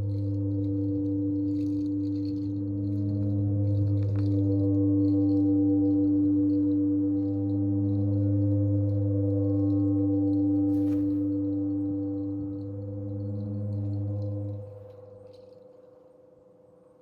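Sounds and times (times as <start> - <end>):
soft rustle: 10.5 - 11.6.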